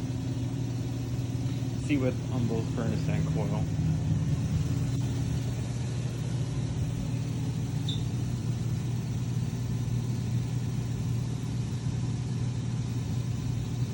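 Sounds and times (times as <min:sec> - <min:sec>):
low mechanical hum: 0:00.0 - 0:13.9
faint high chirp: 0:07.8 - 0:08.2.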